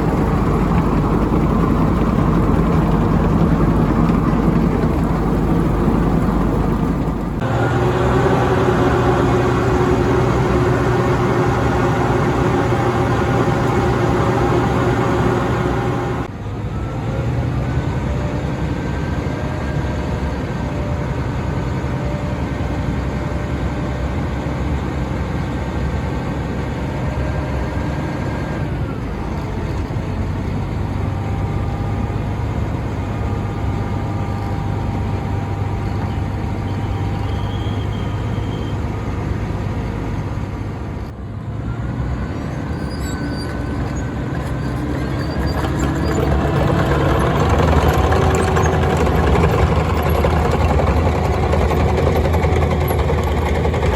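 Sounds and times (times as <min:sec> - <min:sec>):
machine whining tones: 0:00.0 - 0:17.0, 0:42.7 - 0:53.9
diesel engine running: 0:00.0 - 0:53.9.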